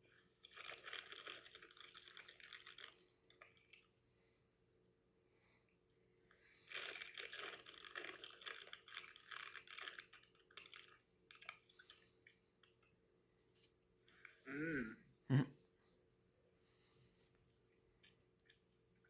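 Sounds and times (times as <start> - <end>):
crunchy popcorn chewing: 0.4 - 3.9, 6.6 - 12.8.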